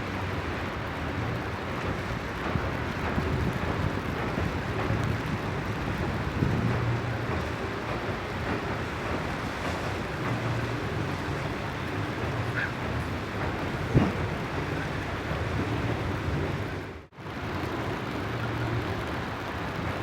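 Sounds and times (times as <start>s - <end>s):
continuous low rumble: 0.0s - 20.0s
wind on microphone: 2.4s - 7.4s, 9.3s - 16.8s.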